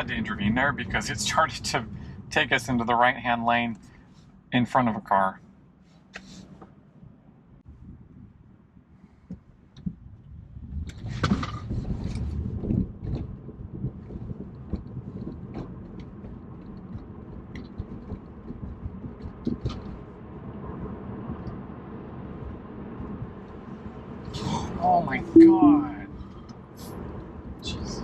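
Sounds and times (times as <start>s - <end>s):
road and tyre rumble in car: 0.0s - 25.3s, 26.2s - 28.0s.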